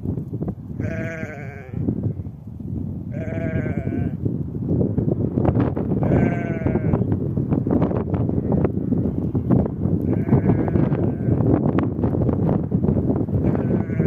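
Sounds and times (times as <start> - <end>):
wind rumble on microphone: 0.0 - 14.0
sheep bleating: 0.8 - 1.8, 3.1 - 4.2, 6.0 - 7.1, 10.0 - 11.5, 13.4 - 14.0.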